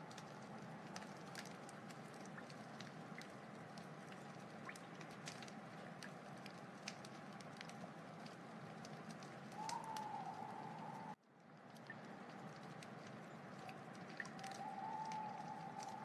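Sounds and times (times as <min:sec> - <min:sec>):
wood fire crackling: 0:00.0 - 0:16.0
faint wavering whistle: 0:09.6 - 0:11.2, 0:14.4 - 0:16.0.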